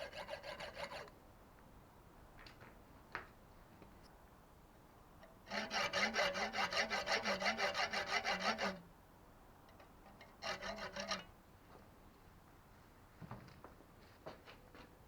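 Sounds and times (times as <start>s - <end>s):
hand saw rasping on metal: 0.0s - 1.1s, 5.5s - 8.8s, 10.4s - 11.3s.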